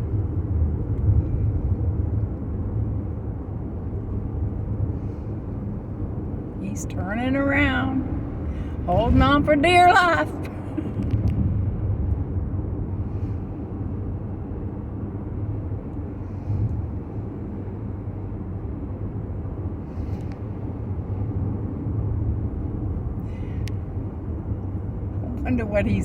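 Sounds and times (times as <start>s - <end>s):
car engine and tyre rumble: 0.0s - 26.0s.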